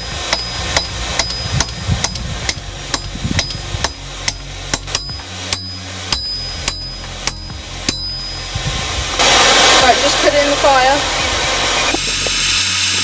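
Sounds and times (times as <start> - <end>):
hammer striking steel on anvil: 0.3 - 8.2.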